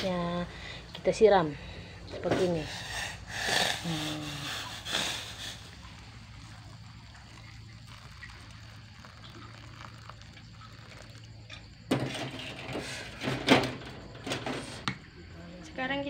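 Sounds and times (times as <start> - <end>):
water pouring into a bowl: 3.9 - 13.2.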